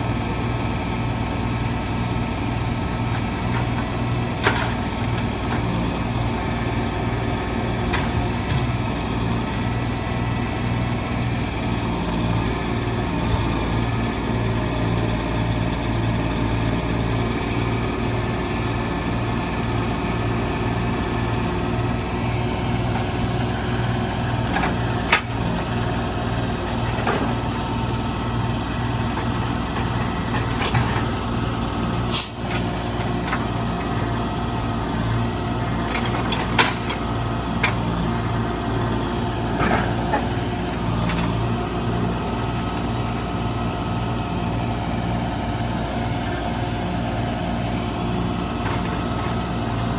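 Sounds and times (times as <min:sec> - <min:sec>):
heavy diesel engine running: 0:00.0 - 0:49.9
brief hiss: 0:32.1 - 0:32.5.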